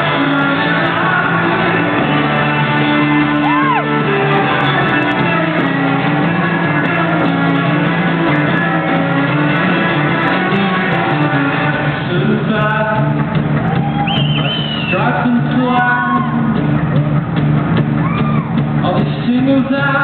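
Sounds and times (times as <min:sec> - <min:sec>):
live band instrumental music: 0:00.0 - 0:20.0.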